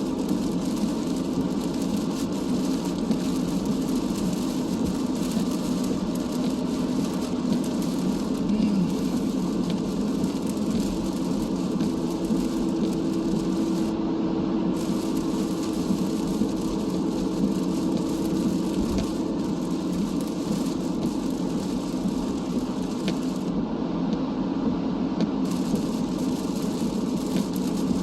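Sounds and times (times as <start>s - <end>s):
tyres and engine rumble: 0.0s - 13.9s.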